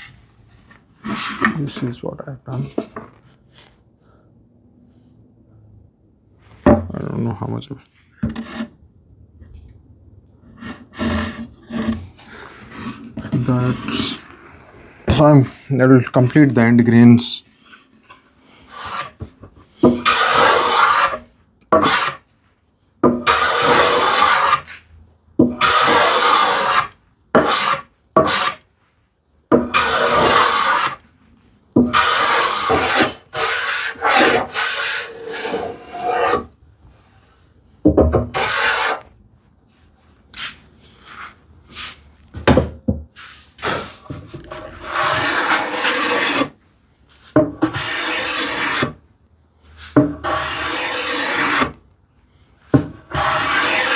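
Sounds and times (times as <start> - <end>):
hand plane scraping wood: 0.0 - 1.9, 8.3 - 8.7, 10.4 - 22.2, 23.0 - 24.8, 25.4 - 28.6, 29.5 - 31.0, 31.8 - 37.3, 38.3 - 39.1, 43.2 - 49.0, 49.7 - 51.8, 52.7 - 53.9.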